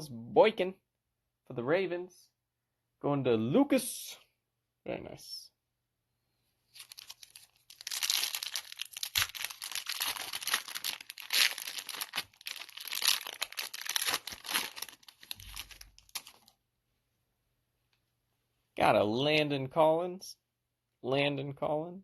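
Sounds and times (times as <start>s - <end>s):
wrapper tearing and crinkling: 6.7s - 16.5s.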